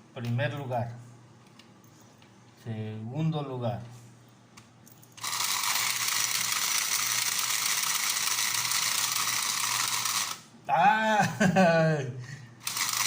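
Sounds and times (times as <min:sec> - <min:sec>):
toy motor whirring clatter: 0:05.2 - 0:10.5, 0:12.6 - 0:13.0.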